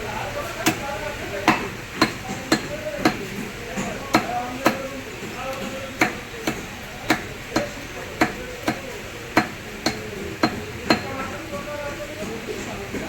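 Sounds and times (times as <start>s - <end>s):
knife chopping fish on wood: 1.5s - 11.1s.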